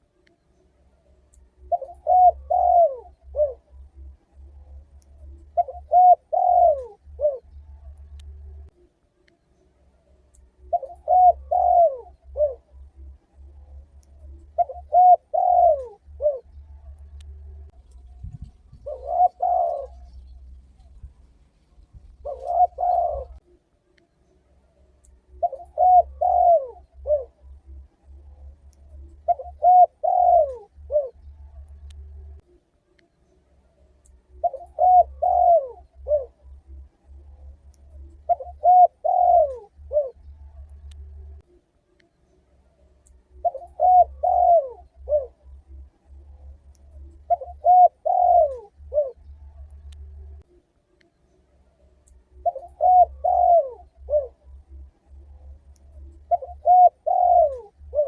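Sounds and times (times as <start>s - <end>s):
faint low hum: 0.0s - 58.0s
dove cooing: 1.5s - 8.7s, 10.5s - 23.5s, 25.2s - 32.5s, 34.2s - 41.4s, 43.3s - 50.6s, 51.8s - 58.0s.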